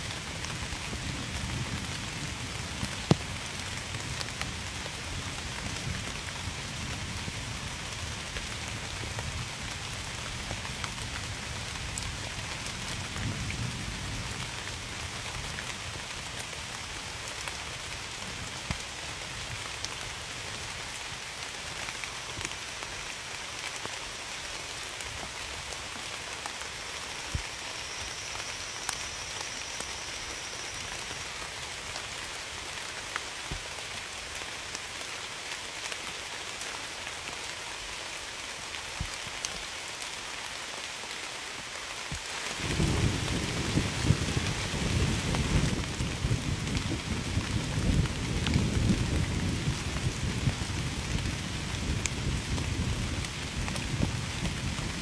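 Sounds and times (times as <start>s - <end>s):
steady rain: 0.0s - 55.0s
distant thunder rumble: 42.6s - 49.0s.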